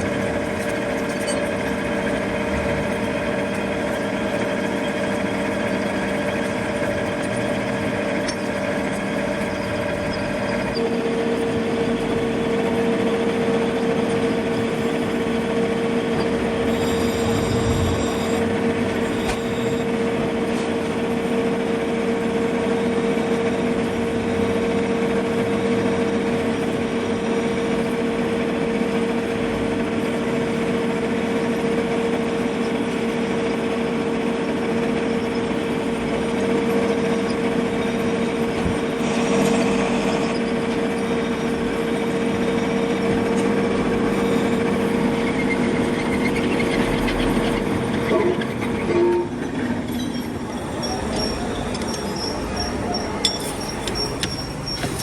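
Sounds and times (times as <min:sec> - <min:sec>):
workshop machinery motor hum: 0:00.0 - 0:55.0.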